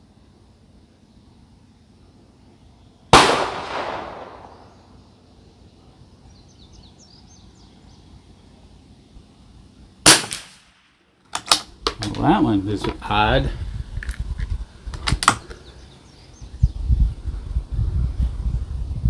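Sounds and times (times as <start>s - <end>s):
rifle shot echoing: 3.1s - 5.0s, 10.0s - 12.2s
sharp clicks: 11.3s - 13.1s, 14.9s - 15.6s.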